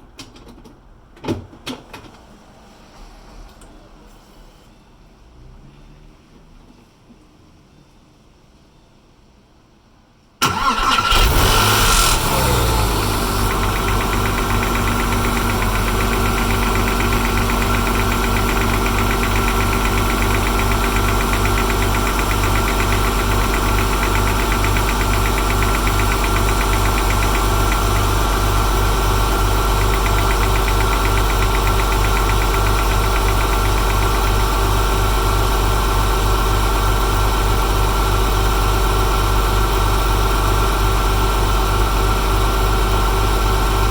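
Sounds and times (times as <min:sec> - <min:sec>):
car engine starting and idling: 0:10.4 - 0:43.9
fast even engine ticking: 0:10.5 - 0:43.9.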